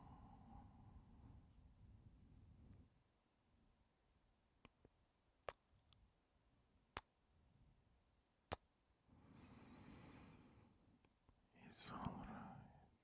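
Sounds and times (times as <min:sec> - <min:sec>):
soft breath: 0:09.1 - 0:10.9.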